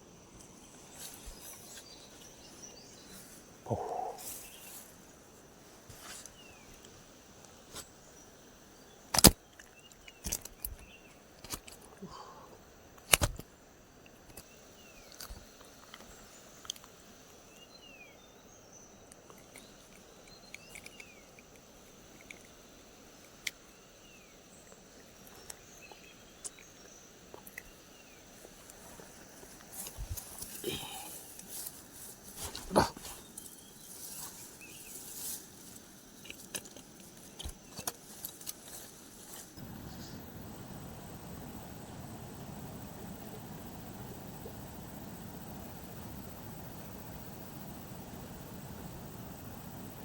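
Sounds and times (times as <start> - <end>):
faint bird chirps: 0.9 - 5.0, 39.6 - 41.2.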